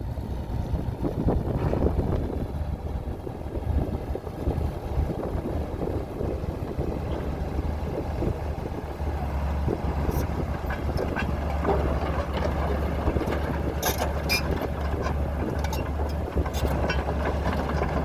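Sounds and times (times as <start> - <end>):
bulldozer diesel engine running: 0.0 - 18.0
irregular rattling: 10.1 - 18.0.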